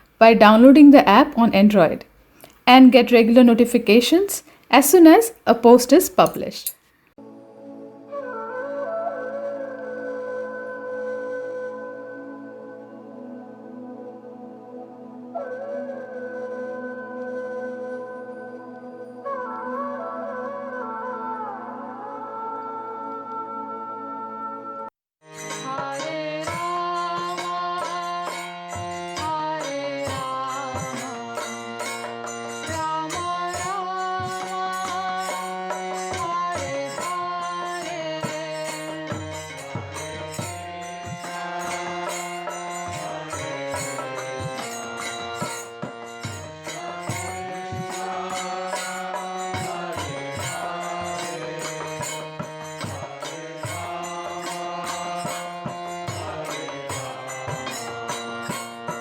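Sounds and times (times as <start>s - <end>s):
light hand percussion: 25.3s - 59.0s
mantra chanting: 25.5s - 45.7s, 46.6s - 59.0s.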